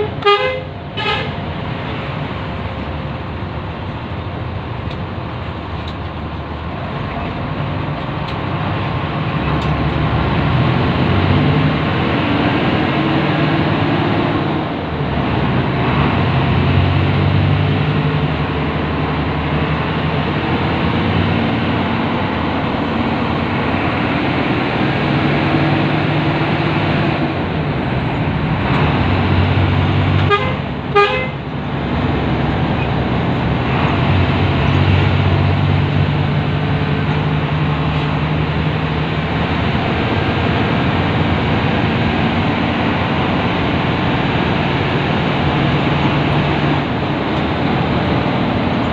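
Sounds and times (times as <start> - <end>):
bus horn blast: 0.0 - 1.4, 30.2 - 31.5
bus engine droning: 0.0 - 48.9.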